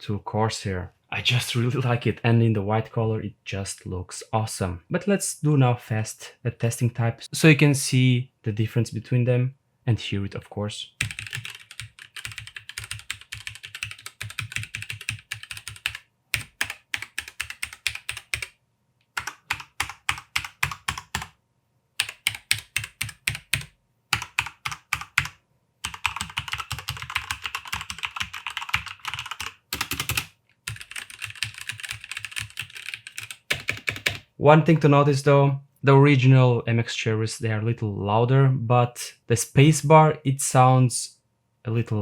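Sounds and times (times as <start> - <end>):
fast typing on mechanical keyboard: 11.0 - 18.5, 19.2 - 21.3, 22.0 - 34.2.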